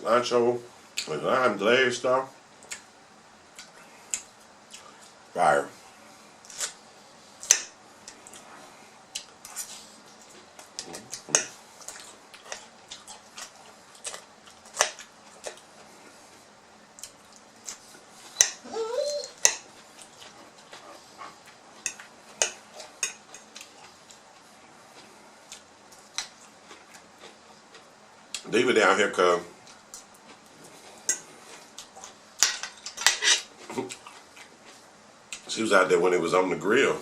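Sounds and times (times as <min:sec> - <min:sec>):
wet chewing and lip-smacking: 0:09.1 - 0:15.7, 0:16.9 - 0:28.5.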